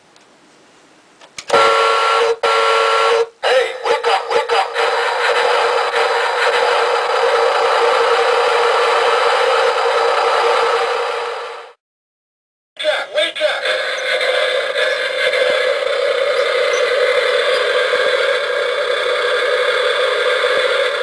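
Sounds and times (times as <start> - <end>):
electronic horn from alarm clock: 1.5 - 3.3
loud steady electronic tone: 1.6 - 11.8, 13.6 - 21.0.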